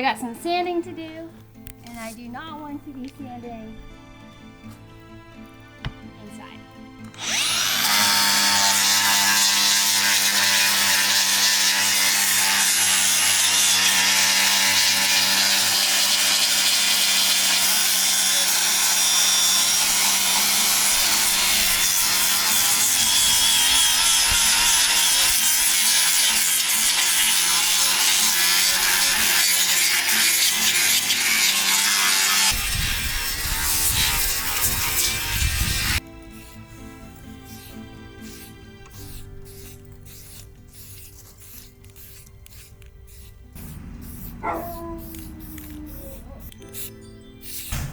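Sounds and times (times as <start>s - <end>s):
power sander sanding wood: 7.2s - 36.0s.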